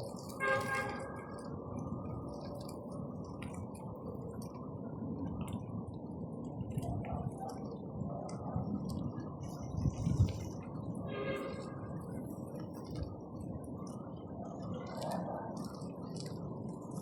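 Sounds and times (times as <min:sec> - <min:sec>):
bonfire crackling: 0:00.0 - 0:17.0.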